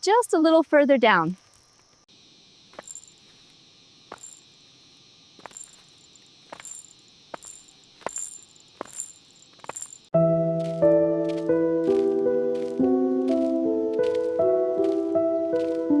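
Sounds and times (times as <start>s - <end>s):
high-pitched insect buzz: 1.2s - 16.0s
sharp footsteps: 2.7s - 4.5s, 5.4s - 16.0s
music: 10.2s - 16.0s.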